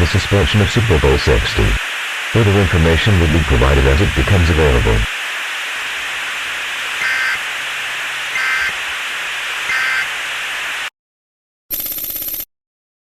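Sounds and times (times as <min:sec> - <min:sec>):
radio static: 0:00.0 - 0:10.9
two-tone warbling data bursts: 0:01.3 - 0:10.9.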